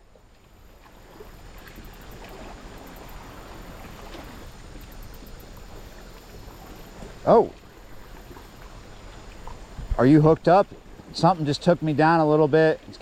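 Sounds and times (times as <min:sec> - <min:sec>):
river water flowing: 0:00.0 - 0:13.0
wind: 0:00.0 - 0:13.0
faint ticks: 0:00.3 - 0:09.6.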